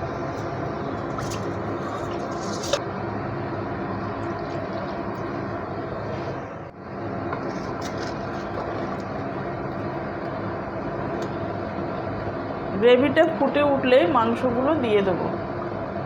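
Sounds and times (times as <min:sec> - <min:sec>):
gas stove roar: 0:00.0 - 0:16.0.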